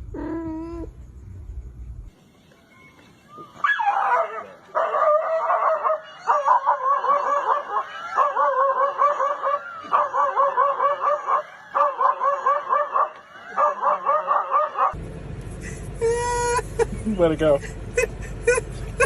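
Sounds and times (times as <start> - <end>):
dog yipping: 3.6 - 15.0.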